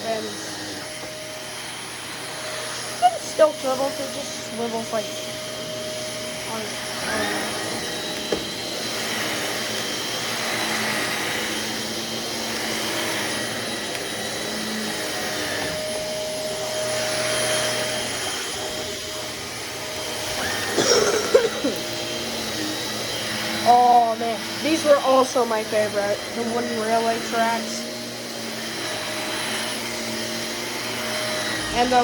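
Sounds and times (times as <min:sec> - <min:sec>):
vacuum cleaner running: 0:00.0 - 0:32.0.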